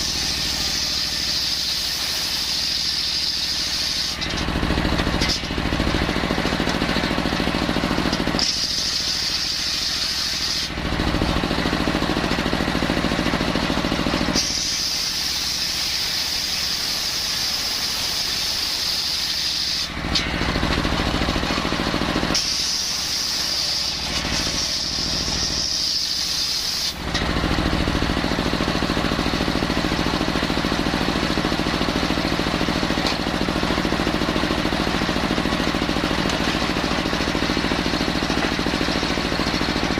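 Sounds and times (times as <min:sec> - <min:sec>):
saw blade hissing whine cutting wood: 0:00.0 - 0:04.3, 0:08.4 - 0:10.8, 0:14.3 - 0:19.9, 0:22.3 - 0:27.0
circular saw engine rumble: 0:00.0 - 0:18.6, 0:19.4 - 0:26.3, 0:27.0 - 0:39.9.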